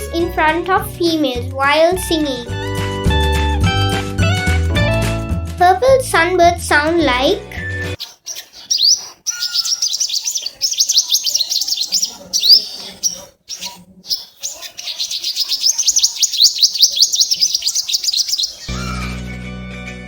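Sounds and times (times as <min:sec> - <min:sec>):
bird twittering: 0:08.0 - 0:19.0.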